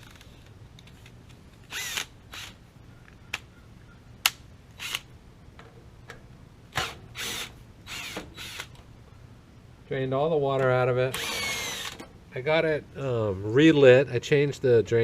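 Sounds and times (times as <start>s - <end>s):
cordless drill bursts: 1.7s - 2.6s, 6.8s - 8.7s, 11.1s - 12.0s.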